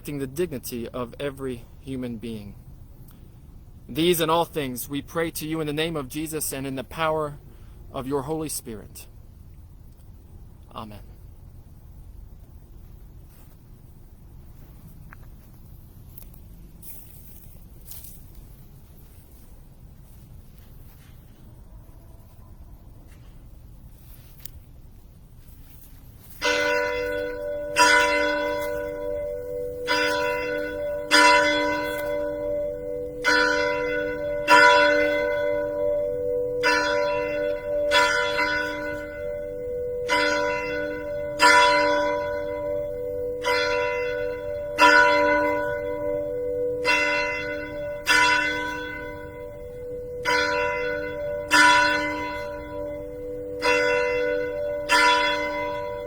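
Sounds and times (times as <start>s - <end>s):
church bell tolling: 26.4s - 56.0s.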